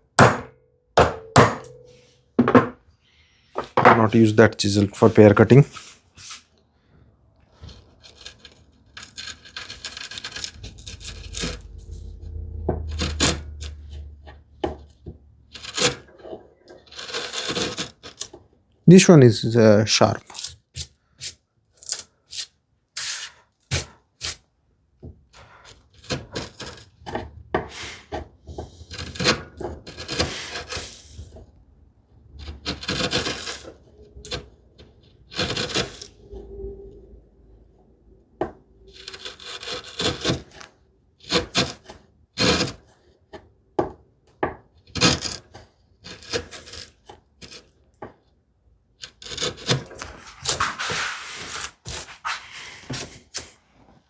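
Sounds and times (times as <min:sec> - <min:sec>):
chisel scraping through wood: 0:07.4 - 0:18.5, 0:25.3 - 0:31.6, 0:32.3 - 0:36.2, 0:38.4 - 0:44.0, 0:44.6 - 0:48.2, 0:49.0 - 0:53.5.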